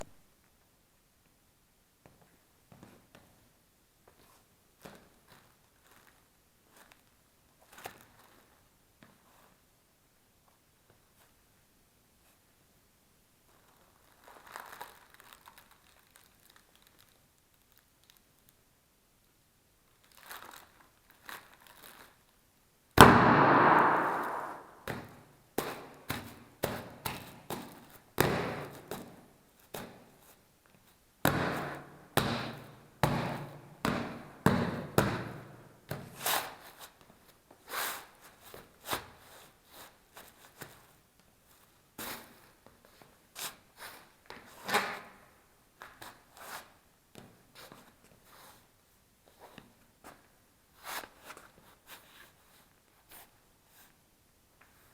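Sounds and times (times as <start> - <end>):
bubble wrap popping: 14.0 - 18.2.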